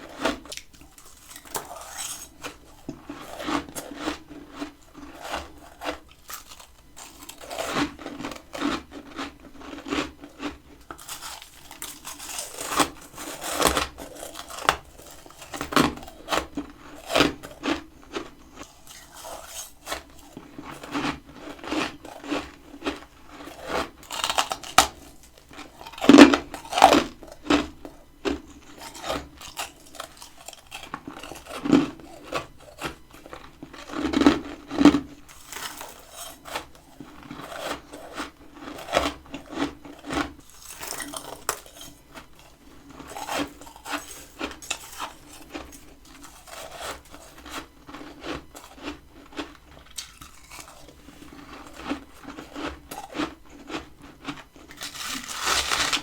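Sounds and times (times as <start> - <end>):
crunchy chewing of frost: 0.0 - 56.0
crisp bites: 10.8 - 27.6, 43.0 - 56.0.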